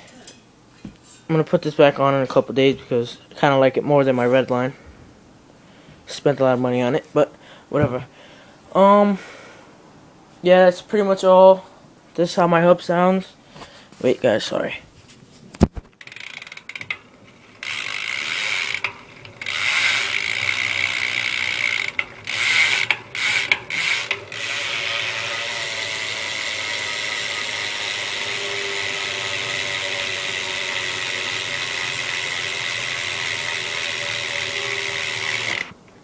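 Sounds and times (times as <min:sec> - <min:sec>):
bicycle hub ratchet clicking: 0:16.0 - 0:35.8.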